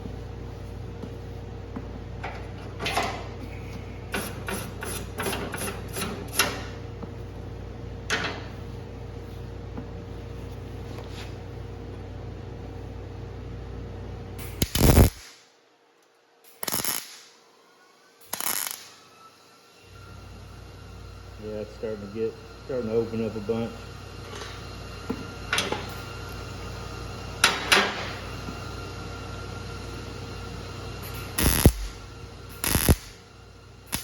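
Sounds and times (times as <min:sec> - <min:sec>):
welder zapping: 0:04.0 - 0:06.8, 0:14.4 - 0:15.4, 0:16.4 - 0:17.4, 0:18.2 - 0:19.2, 0:31.0 - 0:34.0.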